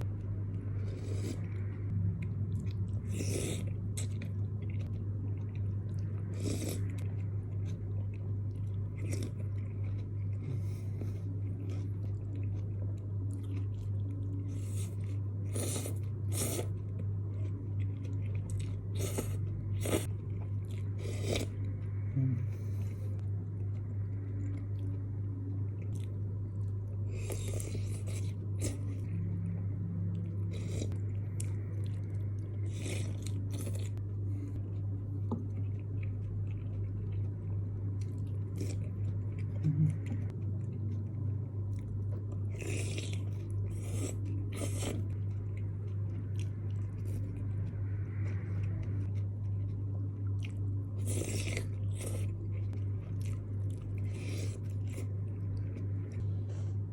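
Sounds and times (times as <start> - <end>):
wet chewing and mouth noises: 0.0 - 56.8
low electrical hum: 0.0 - 56.9.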